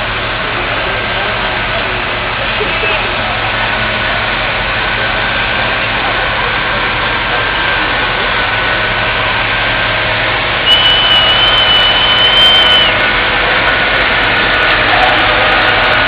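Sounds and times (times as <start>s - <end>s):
high steady whine: 0.0s - 16.0s
tractor engine idling: 0.0s - 16.0s.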